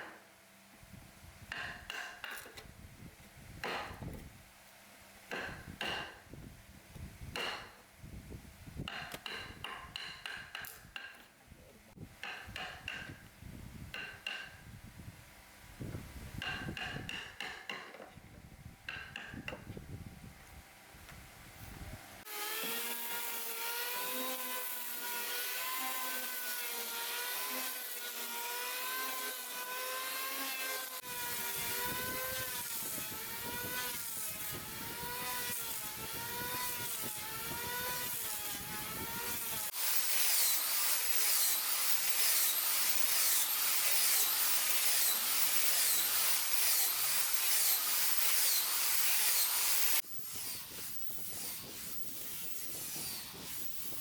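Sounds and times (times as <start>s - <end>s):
power tool motor whining: 22.2s - 54.0s.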